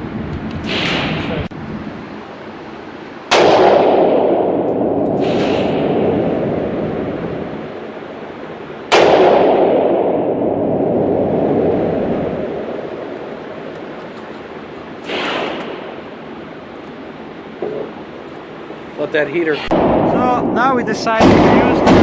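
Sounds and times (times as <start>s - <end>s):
gunshots echoing: 3.3s - 6.4s, 21.2s - 22.0s.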